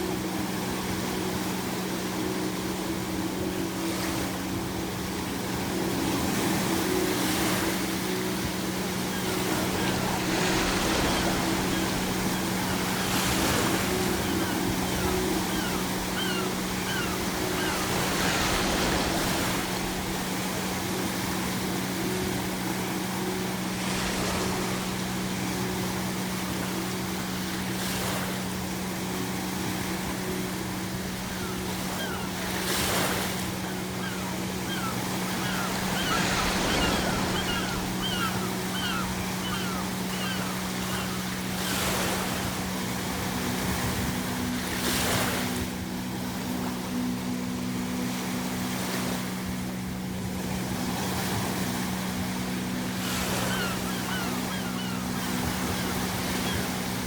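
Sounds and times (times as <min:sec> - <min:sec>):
ocean waves breaking: 0:00.0 - 0:57.0
seagulls calling: 0:02.2 - 0:28.2, 0:29.2 - 0:45.6, 0:50.7 - 0:57.0.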